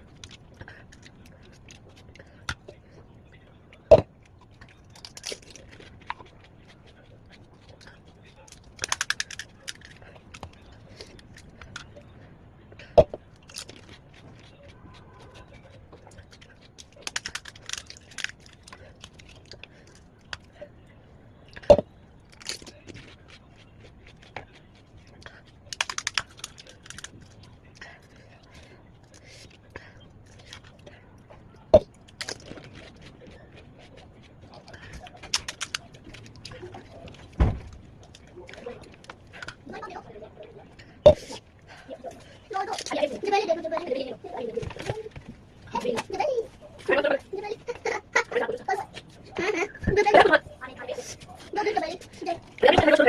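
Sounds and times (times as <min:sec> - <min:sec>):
crisp snack being chewed: 0:00.0 - 0:02.8, 0:03.8 - 0:12.1, 0:13.2 - 0:20.6, 0:21.5 - 0:39.6.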